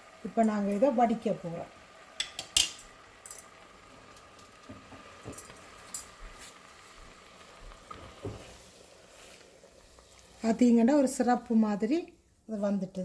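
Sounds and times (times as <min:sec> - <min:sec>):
utensils knocking against pot: 0:02.2 - 0:03.5, 0:05.2 - 0:06.1.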